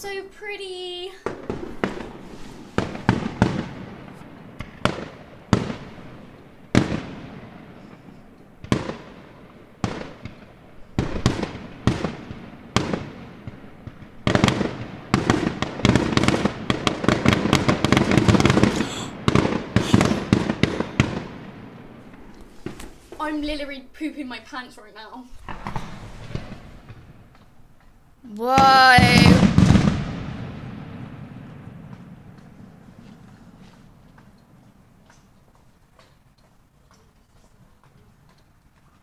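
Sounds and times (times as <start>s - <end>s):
fireworks banging and crackling: 0.0s - 27.6s, 28.3s - 39.0s.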